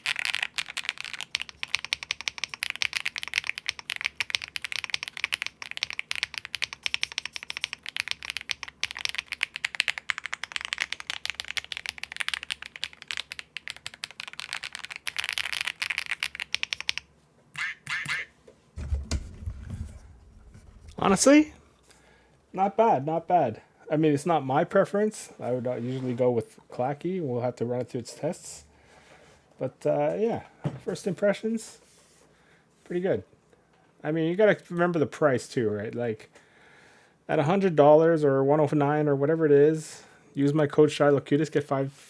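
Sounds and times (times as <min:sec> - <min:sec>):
mechanical keyboard typing: 0:00.0 - 0:17.0
low thump: 0:18.8 - 0:21.0.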